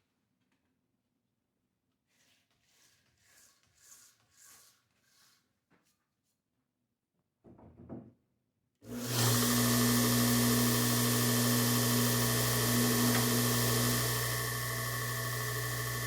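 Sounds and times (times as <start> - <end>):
belt grinder motor whining: 8.8 - 16.0.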